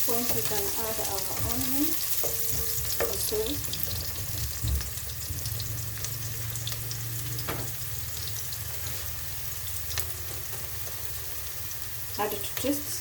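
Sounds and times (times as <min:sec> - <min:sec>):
onions sizzling in oil: 0:00.0 - 0:13.0
knock: 0:02.3 - 0:05.6.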